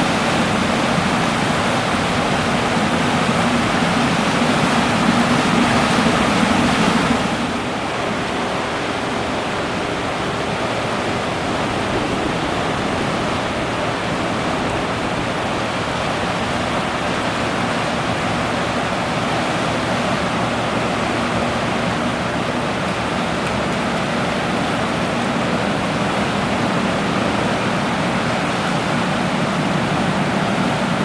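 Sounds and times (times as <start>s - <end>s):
rushing water: 0.0s - 31.0s
wind: 0.0s - 31.0s.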